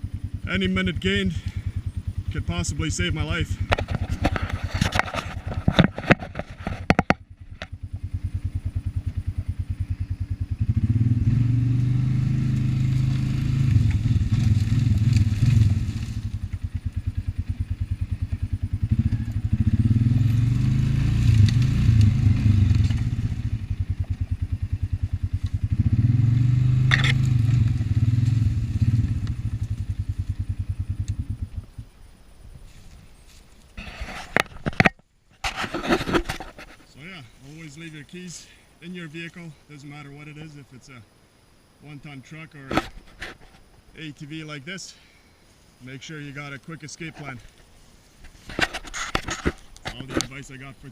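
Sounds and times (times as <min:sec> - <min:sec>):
quad bike engine revving: 0:00.0 - 0:31.7
clatter: 0:03.7 - 0:07.8.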